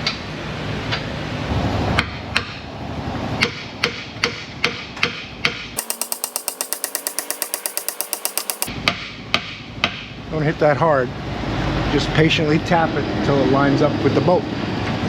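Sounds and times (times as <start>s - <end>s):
hammer tapping on steel: 5.8s - 8.7s.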